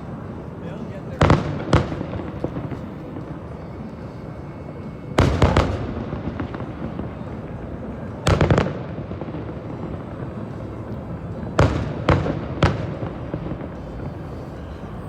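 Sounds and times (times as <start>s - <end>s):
steady background din: 0.0s - 15.0s
fireworks booms: 1.1s - 3.4s, 8.2s - 14.9s.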